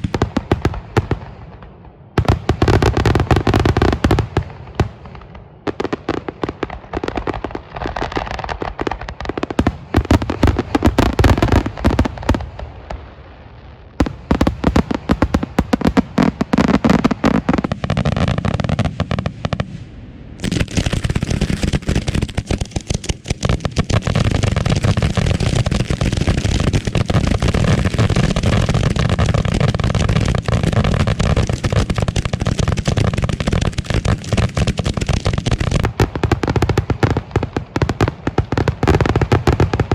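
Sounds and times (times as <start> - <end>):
firework shells bursting: 20.4 - 25.8.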